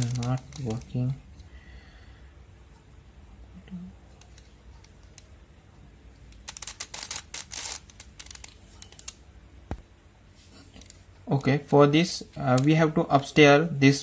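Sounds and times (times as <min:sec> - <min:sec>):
puzzle cube clicking and rattling: 0:00.0 - 0:01.0, 0:06.4 - 0:09.2.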